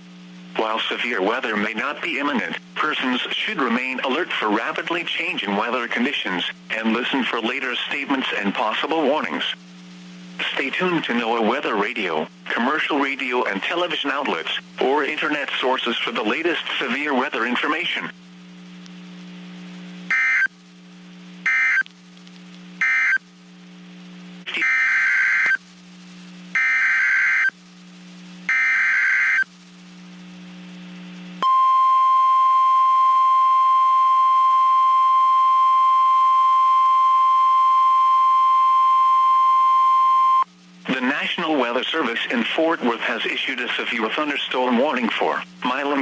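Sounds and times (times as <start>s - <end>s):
low hum: 0.0s - 46.0s
screeching header bursts: 20.1s - 20.5s, 22.8s - 23.2s, 26.5s - 27.5s, 28.5s - 29.5s
short digital data bursts: 20.1s - 20.5s, 21.4s - 21.8s, 22.8s - 23.2s, 24.5s - 25.6s, 26.5s - 27.6s, 28.5s - 29.5s
steady warning alarm tone: 20.1s - 20.5s, 21.4s - 21.9s, 22.8s - 23.2s, 24.5s - 25.6s, 26.5s - 27.6s, 28.5s - 29.5s.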